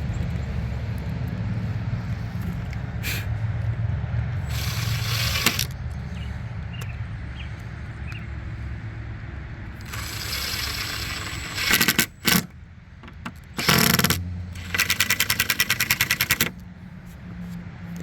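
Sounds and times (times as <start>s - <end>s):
cordless drill driving screws: 4.5s - 5.8s, 9.7s - 12.5s, 13.4s - 16.6s
drill clutch ratcheting clicks: 4.5s - 6.0s, 9.7s - 16.6s.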